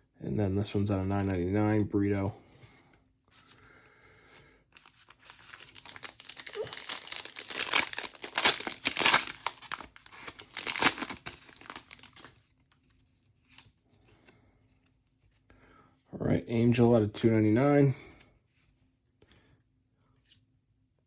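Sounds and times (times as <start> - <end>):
plastic wrapping crinkling: 4.8 - 12.4.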